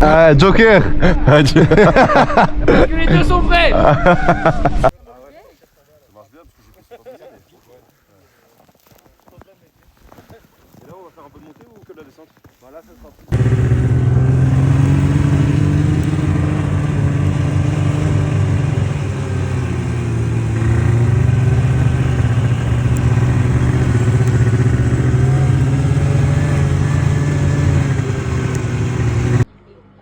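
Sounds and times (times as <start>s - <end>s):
engine running steadily: 13.4s - 29.5s.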